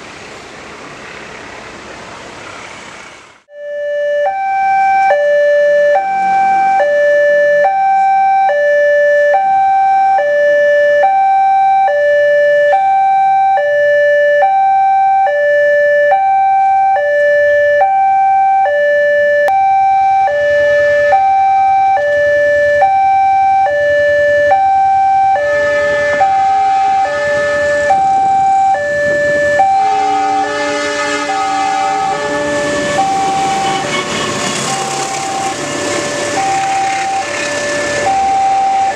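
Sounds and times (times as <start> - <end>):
approaching train: 0.0 - 3.5, 25.4 - 38.9
level crossing two-tone alarm: 3.5 - 38.9.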